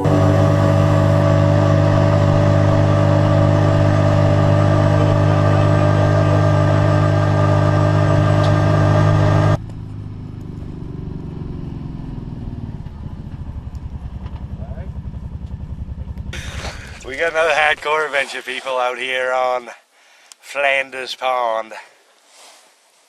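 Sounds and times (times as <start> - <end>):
engine pulsing with falling pitch: 0.0 - 18.0
vehicle engine running: 0.0 - 18.1.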